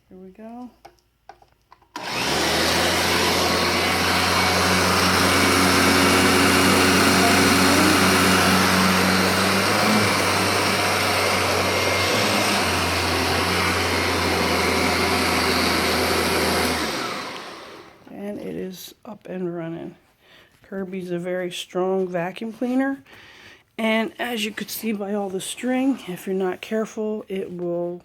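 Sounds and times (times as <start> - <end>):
vacuum cleaner running: 2.0 - 18.1.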